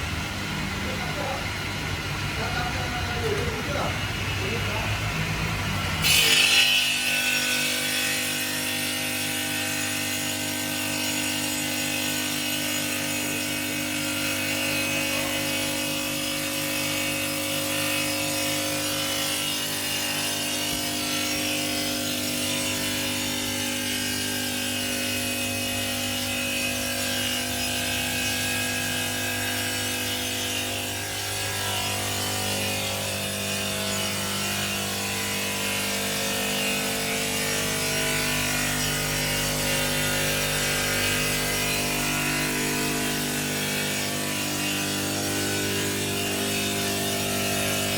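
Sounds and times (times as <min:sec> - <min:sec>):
circular saw cutting stone: 0:00.2 - 0:47.9.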